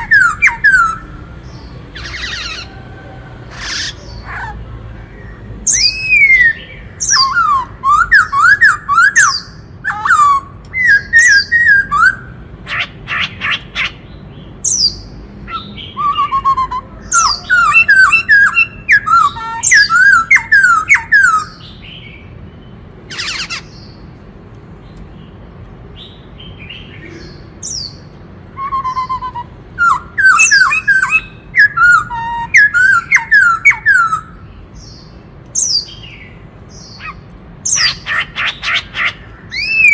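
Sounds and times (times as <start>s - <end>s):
bird whistled song: 0.0s - 2.8s, 5.1s - 22.3s, 26.0s - 39.9s
bird rasping call: 1.9s - 14.0s.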